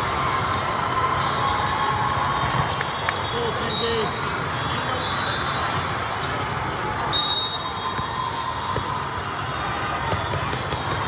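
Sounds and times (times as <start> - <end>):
chatter of players and spectators: 0.0 - 11.0
volleyballs smacking and bouncing: 10.0 - 11.0.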